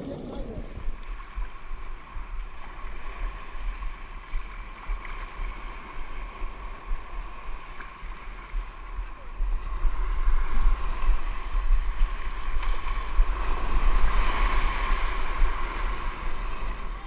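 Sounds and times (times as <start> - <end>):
water washing around a kayak: 0.0 - 1.0
wind buffeting microphone: 0.0 - 1.0.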